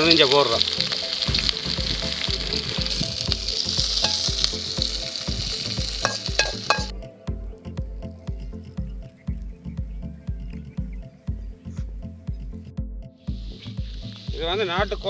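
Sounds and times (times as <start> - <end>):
vegetables sizzling in hot oil: 0.0 - 6.9
stirring clinks: 4.0 - 6.9.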